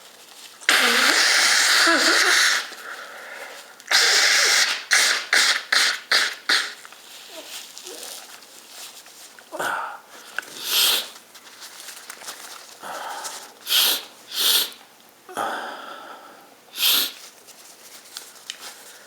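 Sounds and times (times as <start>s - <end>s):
person blowing nose: 0.6s - 8.1s, 10.6s - 11.2s, 13.3s - 14.8s, 16.7s - 17.2s.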